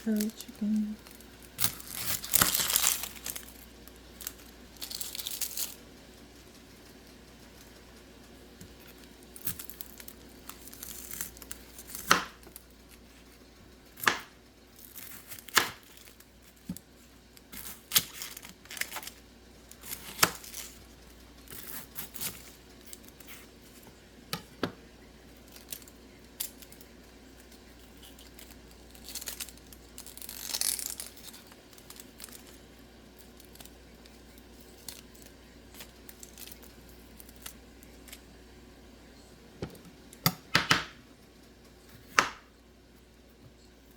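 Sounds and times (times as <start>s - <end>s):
knife slicing onion: 10.7s - 12.5s.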